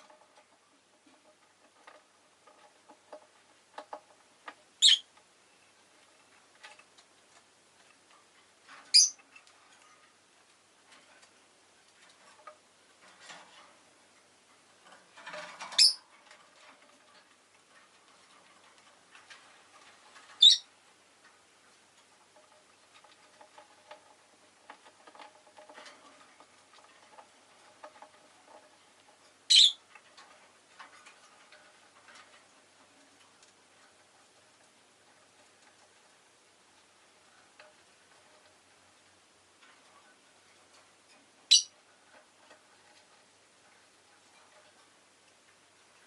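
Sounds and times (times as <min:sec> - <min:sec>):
faint ticks and clicks: 0:00.0 - 0:46.0
bird chirping: 0:04.8 - 0:05.1, 0:08.9 - 0:09.2, 0:15.8 - 0:16.0, 0:20.4 - 0:20.7, 0:29.5 - 0:29.8, 0:41.5 - 0:41.7.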